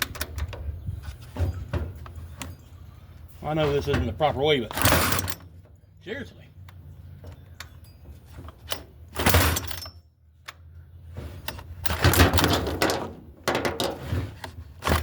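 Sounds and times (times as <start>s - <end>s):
chainsaw starter rope pulls: 4.5s - 5.5s.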